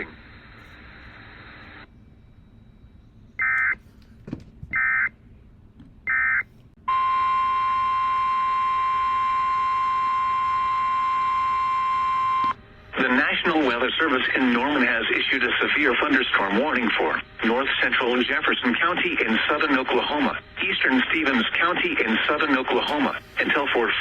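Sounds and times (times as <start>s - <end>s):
steady attention tone: 6.1s - 23.9s.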